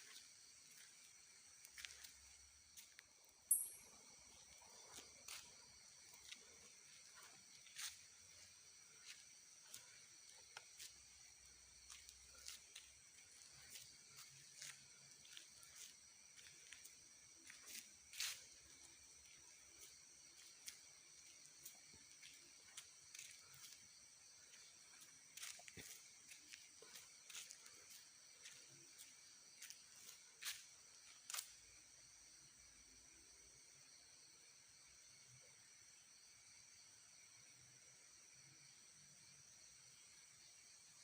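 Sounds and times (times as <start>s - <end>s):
insects chirring: 0.0s - 41.0s.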